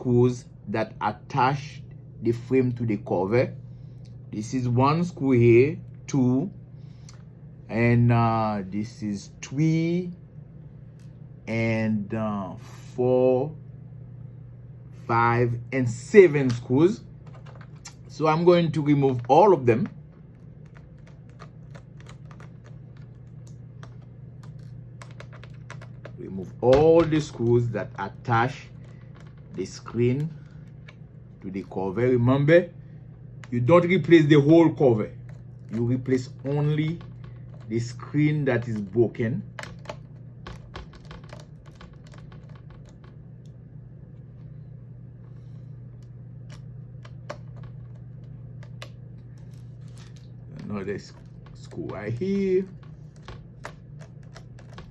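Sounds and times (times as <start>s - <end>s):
steady low hum: 0.0s - 54.9s
screwdriver clicks and taps: 39.6s - 43.1s.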